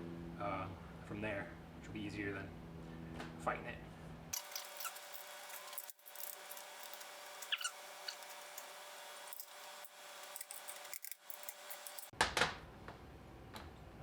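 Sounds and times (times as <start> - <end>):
short squeak: 4.4 - 5.8, 7.4 - 8.3.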